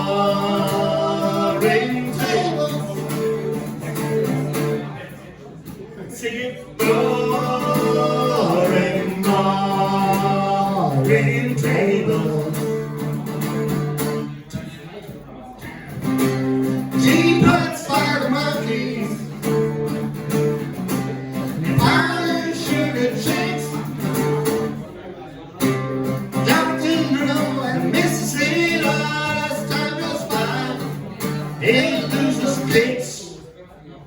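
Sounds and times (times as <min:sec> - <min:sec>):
person singing: 0:00.0 - 0:03.4, 0:06.8 - 0:12.8, 0:16.9 - 0:19.4, 0:21.4 - 0:24.1, 0:26.4 - 0:33.1.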